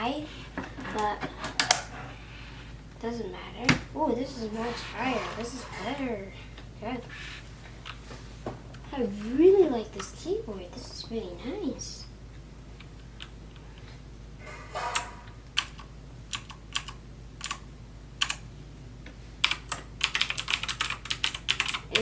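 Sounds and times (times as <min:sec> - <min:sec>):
rapid typing: 0:15.6 - 0:17.6, 0:18.2 - 0:18.4, 0:19.4 - 0:22.0.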